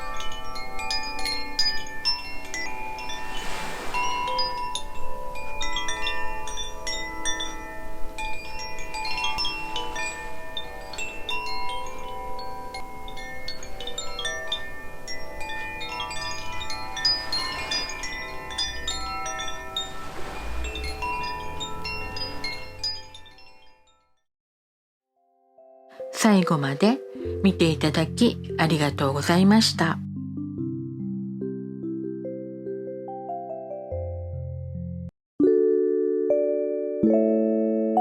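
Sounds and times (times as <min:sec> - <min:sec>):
wind chimes ringing: 0:00.0 - 0:24.1.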